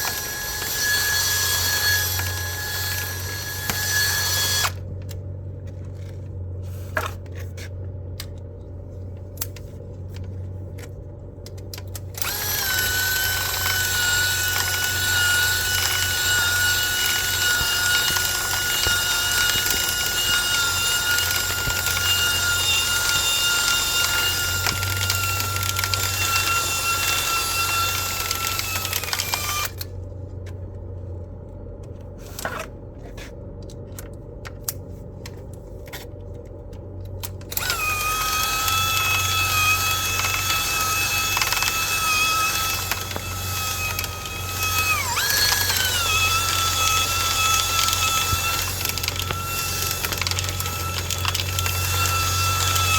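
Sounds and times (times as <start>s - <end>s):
power drill motor whining: 0.0s - 4.8s, 12.2s - 29.9s, 37.5s - 52.9s
low steady hum: 0.0s - 52.9s.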